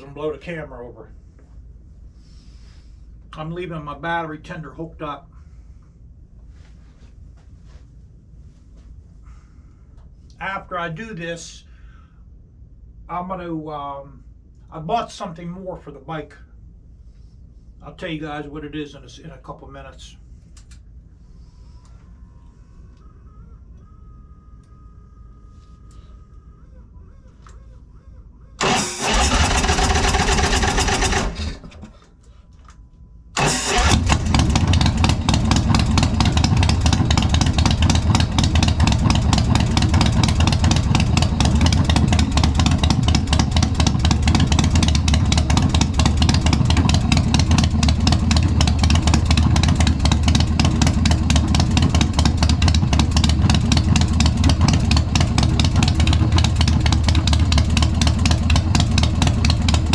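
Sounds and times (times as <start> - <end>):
motorcycle engine idling: 28.5 - 31.8, 33.4 - 59.9.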